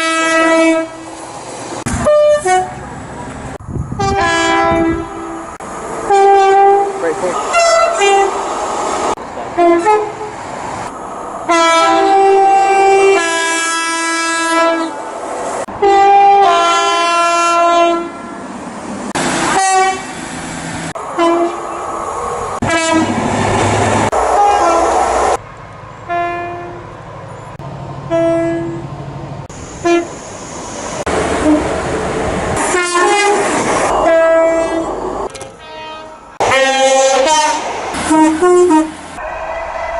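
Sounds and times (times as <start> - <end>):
two-tone train horn blasts: 0.0 - 1.1, 1.9 - 2.8, 4.0 - 5.5, 6.1 - 8.4, 9.6 - 10.3, 11.5 - 15.0, 15.8 - 18.4, 19.5 - 20.1, 21.1 - 21.8, 22.6 - 23.2, 24.4 - 25.0, 26.1 - 26.8, 28.1 - 28.8, 29.8 - 30.2, 31.4 - 31.7, 32.6 - 34.9, 35.5 - 39.9
train running noise: 0.0 - 39.9
short train horn toots: 11.5 - 14.9, 19.6 - 20.1, 21.2 - 21.6, 22.6 - 23.1, 28.1 - 28.8, 29.8 - 30.2, 35.6 - 39.9.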